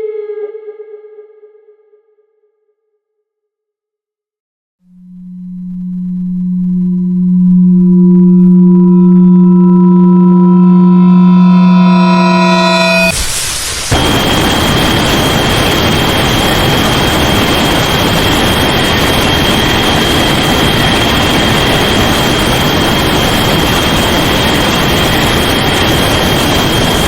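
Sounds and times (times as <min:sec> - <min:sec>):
ringing tone: 0:04.9 - 0:13.2
thin high whine: 0:04.9 - 0:27.0
static rushing noise: 0:11.9 - 0:27.0.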